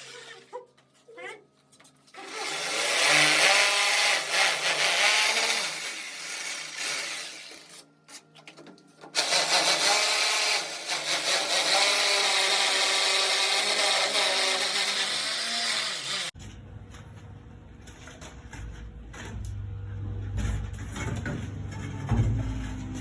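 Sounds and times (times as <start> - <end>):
power tool running under load: 2.2 - 7.8, 9.2 - 16.4.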